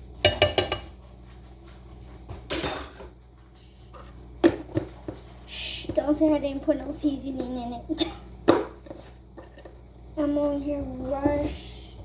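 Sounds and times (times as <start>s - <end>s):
kitchen utensils clattering: 0.2s - 1.0s, 2.5s - 3.2s.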